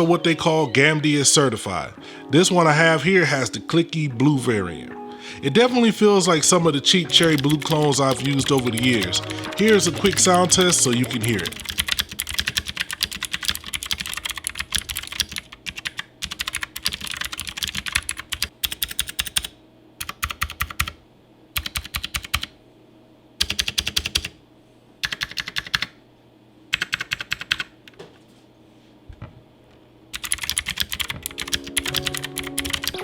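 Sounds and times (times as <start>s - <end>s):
mechanical keyboard typing: 7.1s - 21.0s, 21.6s - 22.5s, 23.4s - 24.4s, 25.0s - 25.9s, 26.7s - 27.7s, 30.2s - 33.0s.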